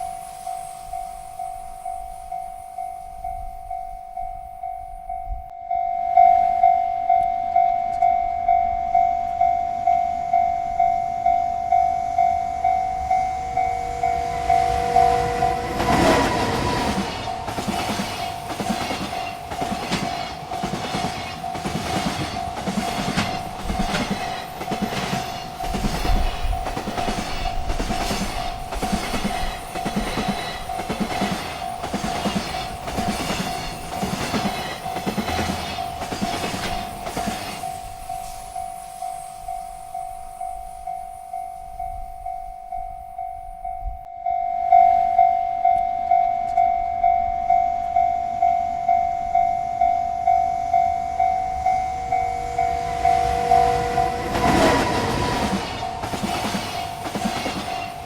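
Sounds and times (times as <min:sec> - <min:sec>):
railroad crossing bell ringing: 0:00.0 - 0:58.0
train wheels clattering over rail joints: 0:14.6 - 0:38.2, 0:52.4 - 0:58.0.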